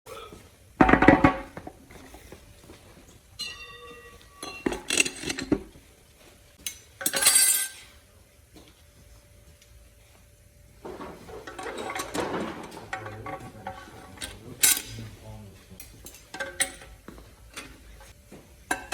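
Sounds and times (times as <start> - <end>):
struck metal part ringing: 3.4 - 5.4
metal parts clanking: 3.4 - 5.7, 6.6 - 7.9, 10.8 - 15.2, 15.8 - 18.9.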